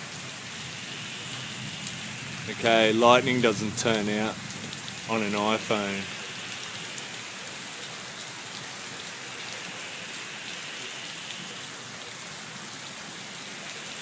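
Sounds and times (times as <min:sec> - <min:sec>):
heavy rain pouring: 0:00.0 - 0:14.0
gutters spilling water: 0:02.4 - 0:07.1.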